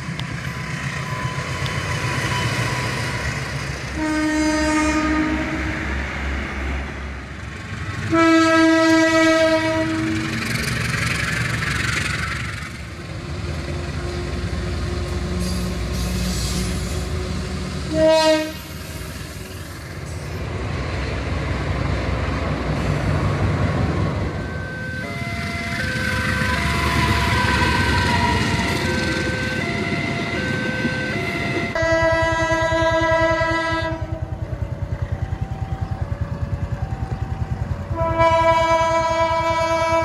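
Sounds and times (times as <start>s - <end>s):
train rumble and wheel clatter: 0.0s - 40.0s
locomotive horn blast: 3.9s - 5.8s, 8.1s - 10.4s, 17.9s - 18.7s, 24.6s - 34.2s, 37.9s - 40.0s.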